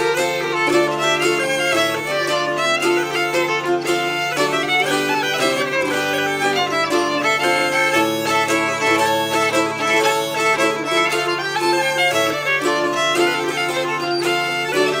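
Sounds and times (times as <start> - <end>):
fiddle playing quick melody: 0.0 - 15.0.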